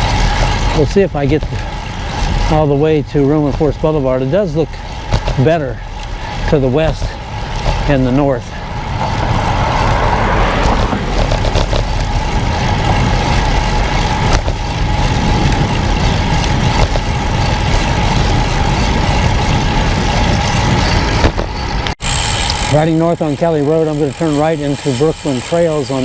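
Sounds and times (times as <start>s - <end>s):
bike tyres on pavement: 0.0s - 26.0s
wind rush: 5.8s - 21.9s.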